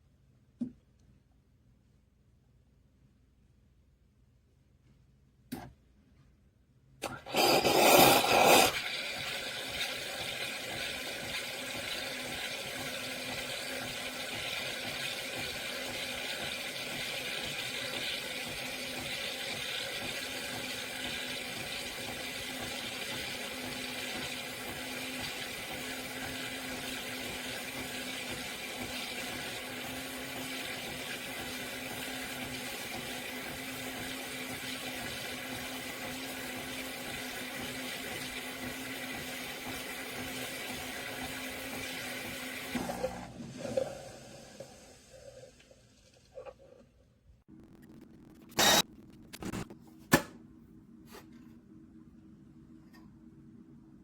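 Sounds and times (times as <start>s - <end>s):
espresso machine hissing: 7.1s - 8.9s, 48.5s - 48.8s.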